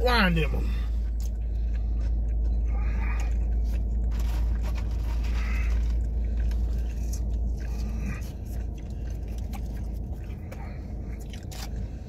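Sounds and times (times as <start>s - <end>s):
steady low rumble: 0.0s - 12.0s
person chewing food: 0.8s - 12.0s
scraping and crinkling: 3.1s - 10.4s.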